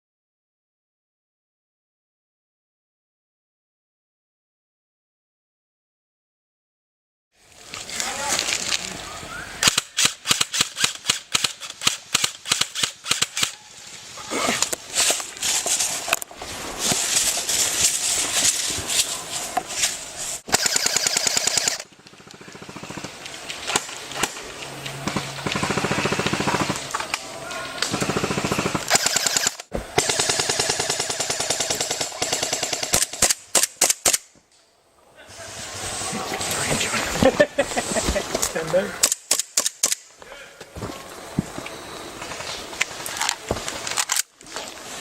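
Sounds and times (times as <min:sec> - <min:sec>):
airsoft guns firing: 0:09.6 - 0:13.6, 0:20.5 - 0:24.4, 0:25.0 - 0:26.9, 0:27.8 - 0:34.3.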